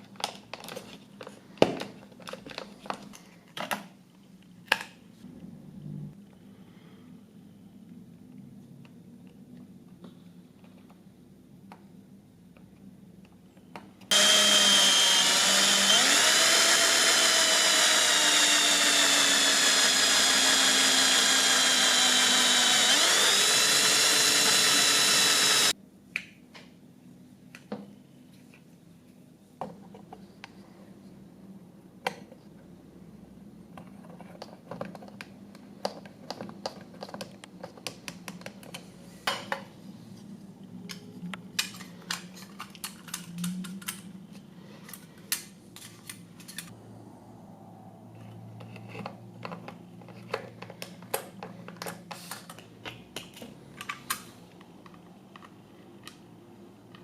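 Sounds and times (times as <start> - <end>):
small electric power tool running: 14.1 - 25.8.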